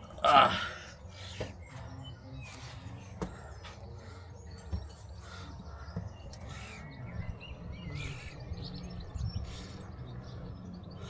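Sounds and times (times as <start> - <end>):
harsh bird calls: 0.0 - 11.0
wind rumble on microphone: 6.9 - 11.0.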